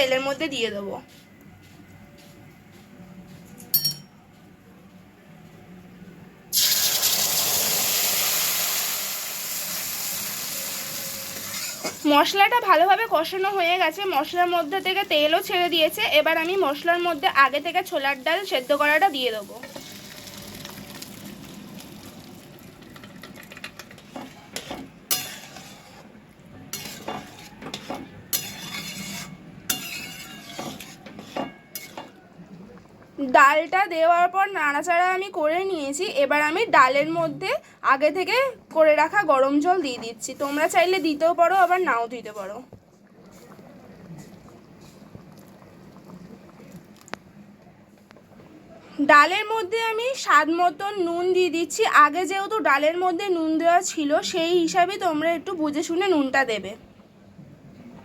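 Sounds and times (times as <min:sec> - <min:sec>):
metallic clink: 0:03.6 - 0:04.1
faint sizzle: 0:05.8 - 0:36.6, 0:37.4 - 0:50.2
paste sizzling in hot oil: 0:06.6 - 0:12.1, 0:16.7 - 0:22.6, 0:24.0 - 0:26.1, 0:26.7 - 0:32.1
utensil scraping and knocking pan: 0:23.7 - 0:26.1, 0:26.7 - 0:32.2.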